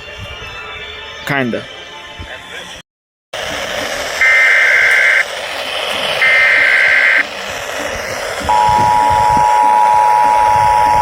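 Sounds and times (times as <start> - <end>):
radio hiss: 3.4 - 11.0
shrill digital data tones: 4.2 - 5.3, 6.2 - 7.3, 8.5 - 11.0
two-tone attention signal: 6.2 - 7.2, 8.5 - 11.0.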